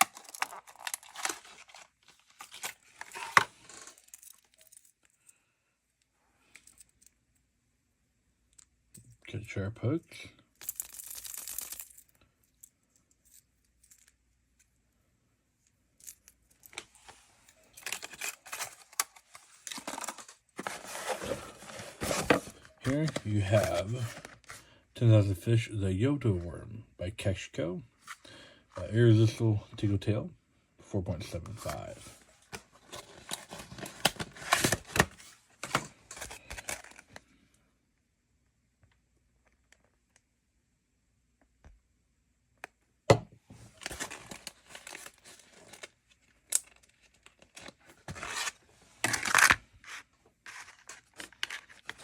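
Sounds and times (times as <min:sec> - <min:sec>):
plastic packaging crinkling: 0:00.0 - 0:04.3, 0:33.0 - 0:37.0, 0:43.7 - 0:46.0, 0:46.6 - 0:52.0.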